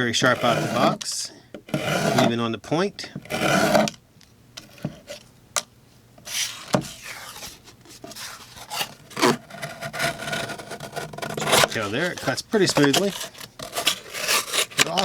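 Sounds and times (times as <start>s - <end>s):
knife scraping through material: 0.3s - 1.0s, 1.7s - 2.3s, 3.3s - 3.9s, 6.2s - 15.0s.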